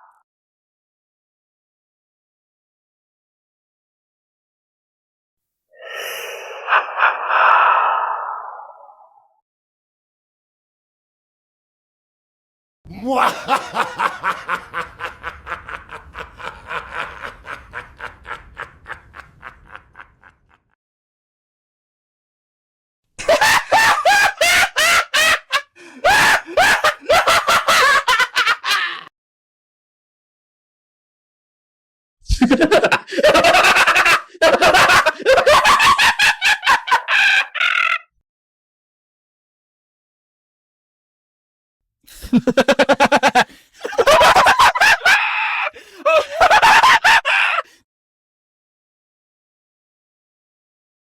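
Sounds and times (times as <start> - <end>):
evil laugh: 5.8 - 9.2, 12.9 - 20.6, 23.2 - 29.1, 32.3 - 38.1, 42.1 - 47.8.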